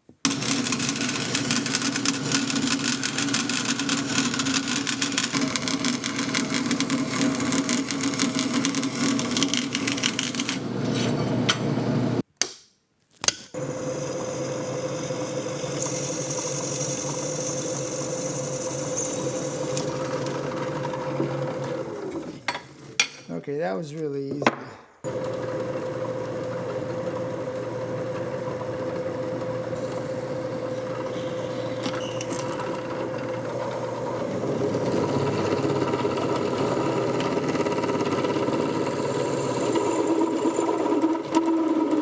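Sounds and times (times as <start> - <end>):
bandsaw cutting metal: 0.3 - 11.6, 13.6 - 22.4, 29.7 - 42.0.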